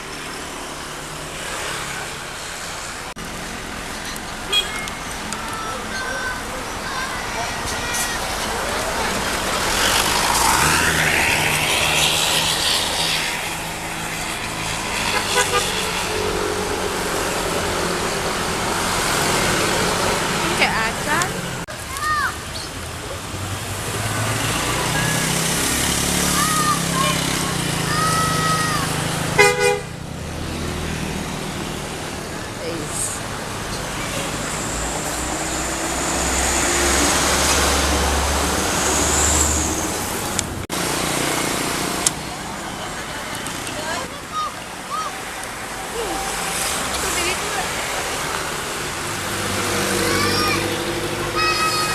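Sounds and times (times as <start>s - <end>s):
heavy vehicle engine rumble: 2.0s - 25.5s.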